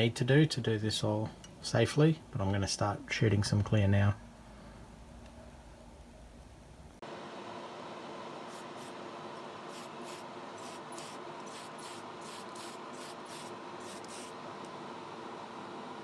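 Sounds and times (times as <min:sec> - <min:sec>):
extractor fan hum: 0:00.0 - 0:16.0
spray gun hissing bursts: 0:08.5 - 0:09.0, 0:09.7 - 0:14.4.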